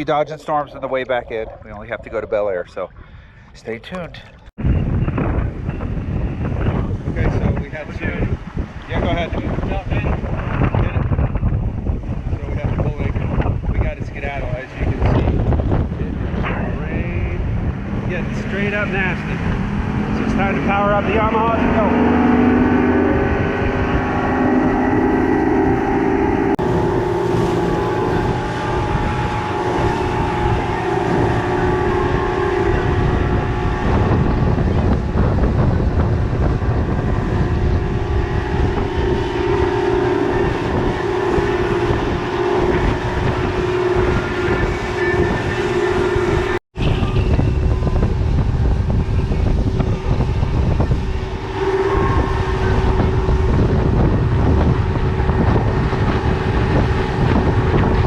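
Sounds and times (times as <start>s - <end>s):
outboard motors droning: 0.0s - 58.0s.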